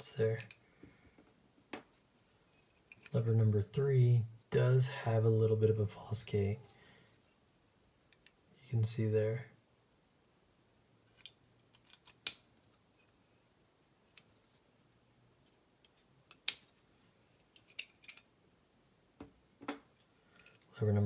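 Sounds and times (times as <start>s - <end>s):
small metal clicks and clinks: 11.2s - 12.8s, 17.4s - 18.3s.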